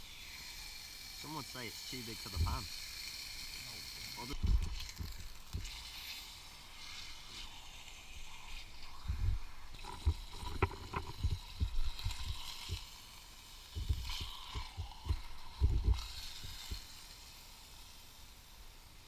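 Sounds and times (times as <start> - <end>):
steak sizzling in a pan: 0.0 - 19.0
low thumps and rumbles: 4.4 - 5.7, 9.0 - 12.8, 13.8 - 16.7.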